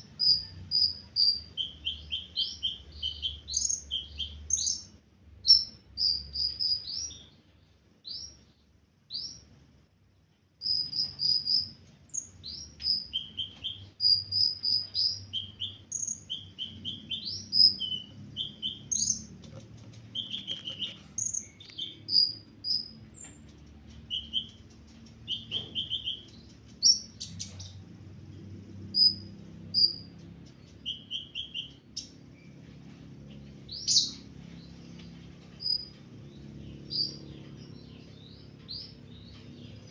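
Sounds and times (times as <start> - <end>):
sunbird singing high chirps: 0.0 - 7.4, 10.6 - 19.4, 20.0 - 23.4, 24.0 - 27.8, 28.8 - 39.9
faint steady low hum: 0.0 - 39.9.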